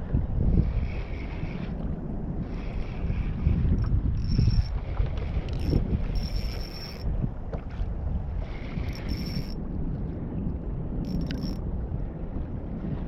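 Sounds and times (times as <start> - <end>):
wind buffeting microphone: 0.0 - 13.0
fishing reel whine: 0.5 - 1.8, 2.4 - 7.2, 8.4 - 9.6, 11.0 - 11.6.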